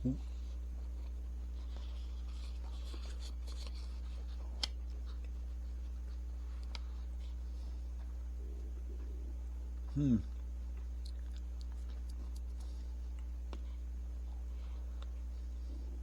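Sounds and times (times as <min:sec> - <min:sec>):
steady low hum: 0:00.0 - 0:16.0
soft rubbing and rustling: 0:00.2 - 0:09.8.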